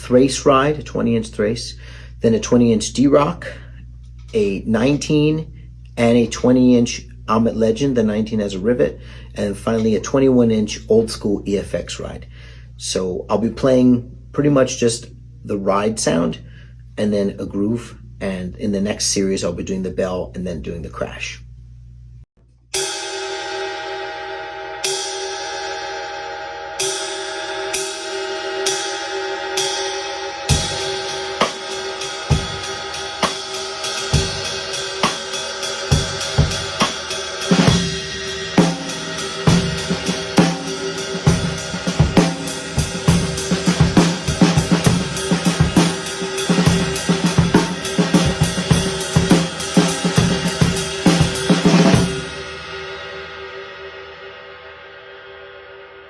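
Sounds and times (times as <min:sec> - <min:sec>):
ride cymbal ringing: 0:22.8 - 0:54.9
drum kit groove: 0:26.8 - 0:54.0.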